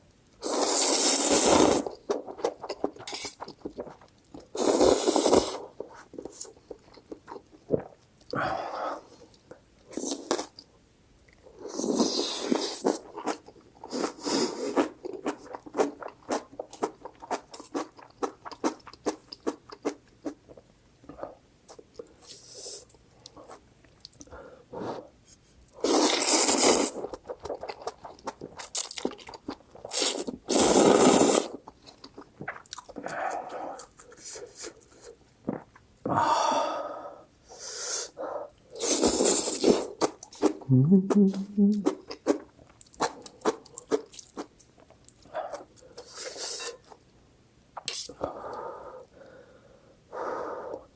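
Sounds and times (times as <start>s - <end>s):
noodle slurping: 0.4s - 2.0s, 4.6s - 5.7s, 29.9s - 31.6s.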